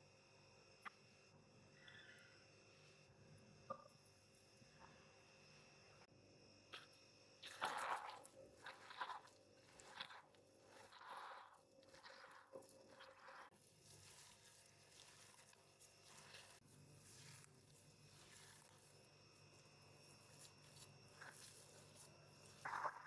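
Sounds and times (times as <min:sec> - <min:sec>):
food crunching: 0:06.8 - 0:23.0.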